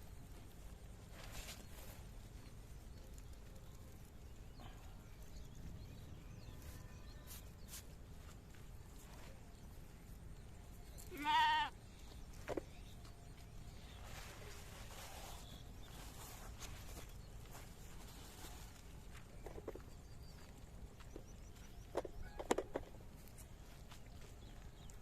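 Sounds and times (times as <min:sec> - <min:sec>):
outdoor background: 0:00.0 - 0:25.0
goat or sheep bleat: 0:11.1 - 0:11.8.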